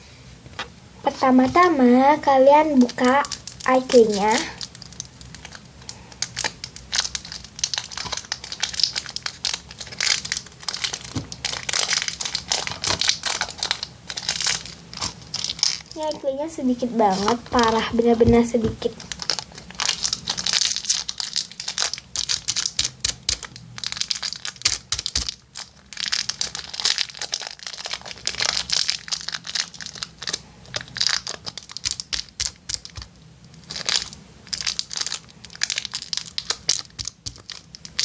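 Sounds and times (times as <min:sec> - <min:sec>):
plastic packaging crinkling: 0:02.7 - 0:38.0.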